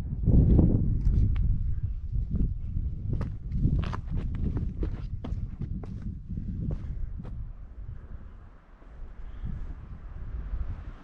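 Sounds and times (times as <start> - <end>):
low wind rumble: 0.0 - 11.0
footsteps on loose rocks: 2.3 - 7.4.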